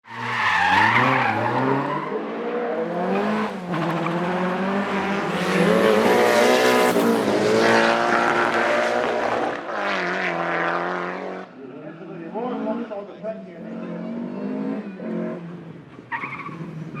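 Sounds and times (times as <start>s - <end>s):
race car engine revving: 0.6s - 11.5s.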